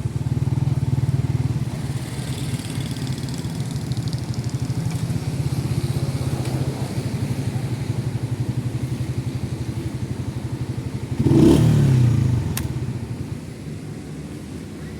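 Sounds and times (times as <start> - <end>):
motorcycle engine running: 0.0 - 14.9
sharp click: 12.5 - 12.8.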